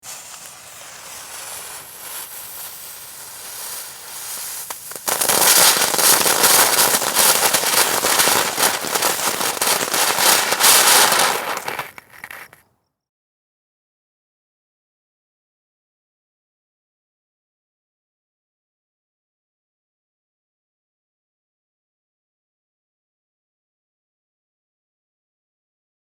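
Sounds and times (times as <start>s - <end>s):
firework fountain hissing and crackling: 0.0s - 12.6s.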